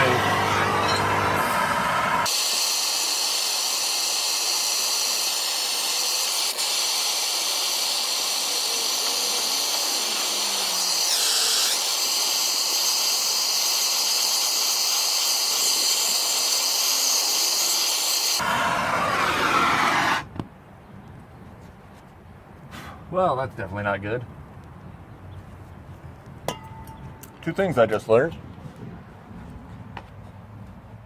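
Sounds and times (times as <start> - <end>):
gas torch hissing: 1.3 - 20.3.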